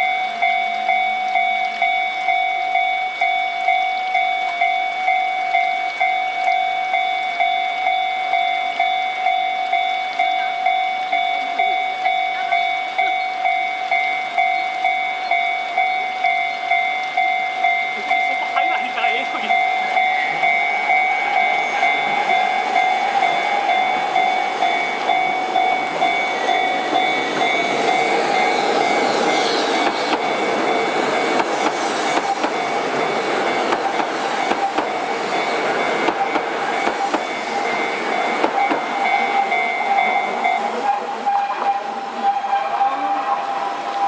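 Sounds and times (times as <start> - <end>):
crossing warning bells ringing: 0.0 - 44.0
train wheels clacking over rail joints: 29.7 - 37.8, 38.4 - 40.1.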